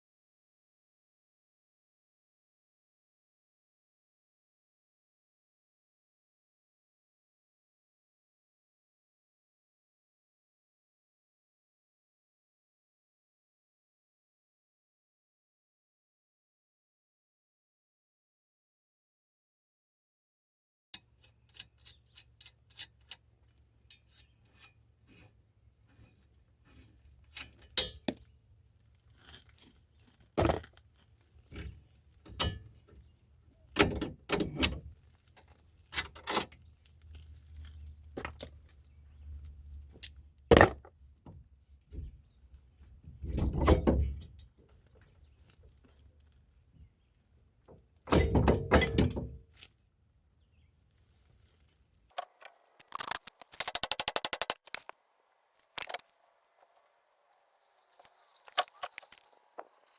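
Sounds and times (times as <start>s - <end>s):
metal parts clanking and scraping: 21.2s - 25.3s, 25.9s - 28.3s, 29.0s - 40.9s, 43.1s - 44.5s, 51.5s - 54.9s, 55.8s - 56.1s
evenly spaced clicks: 52.8s - 54.9s.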